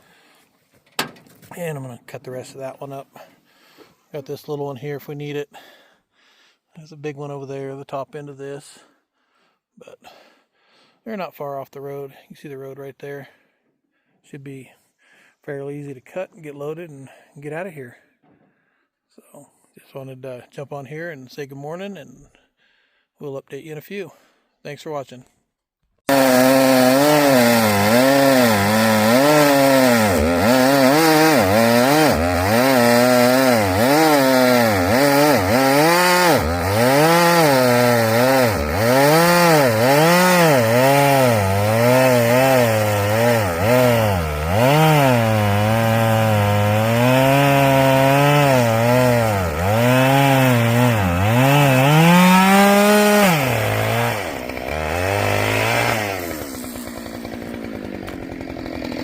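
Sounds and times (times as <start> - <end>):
chainsaw cutting wood: 26.1 - 59.0.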